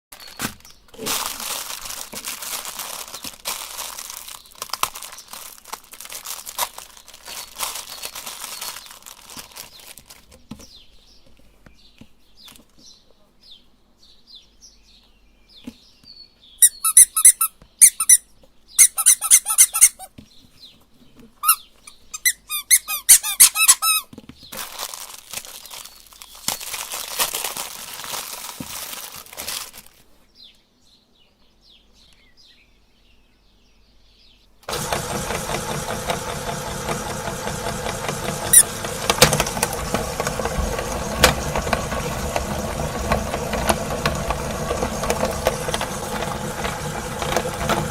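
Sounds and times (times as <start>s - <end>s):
rustling: 0.2s - 10.7s
high squeaks: 16.6s - 18.2s, 18.8s - 20.1s, 21.4s - 24.1s, 34.7s - 47.9s
electric meat grinder motor: 34.7s - 47.9s.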